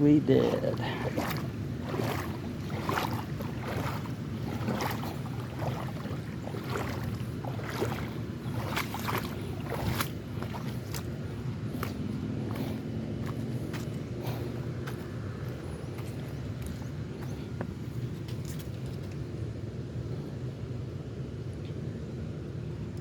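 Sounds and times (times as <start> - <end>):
creek water rushing: 0.0 - 17.3
water splashing around wading: 0.0 - 19.3.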